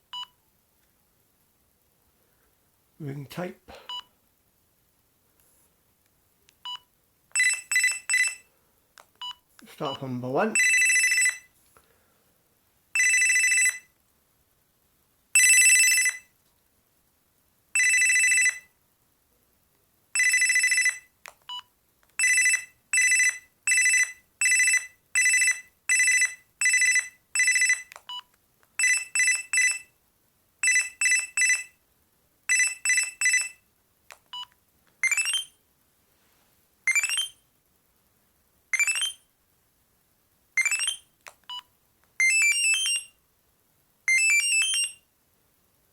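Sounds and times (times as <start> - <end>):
phone beep patterns: 6.6 - 8.5, 10.5 - 11.5, 20.2 - 29.9, 30.6 - 31.7, 32.5 - 33.6, 34.3 - 35.6, 36.9 - 37.4, 38.7 - 39.2, 40.6 - 43.1, 44.1 - 45.0
phone ringtone electronic trill: 36.9 - 37.4, 40.6 - 41.0, 42.2 - 43.1, 44.1 - 45.0.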